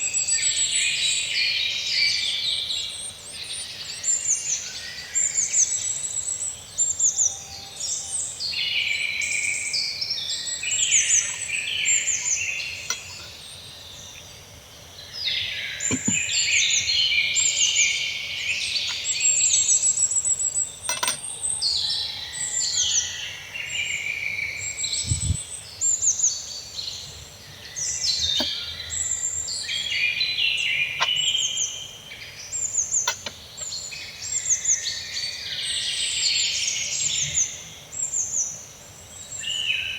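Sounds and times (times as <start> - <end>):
small birds chirping: 0.0 - 39.9
faint knocks: 15.8 - 16.3.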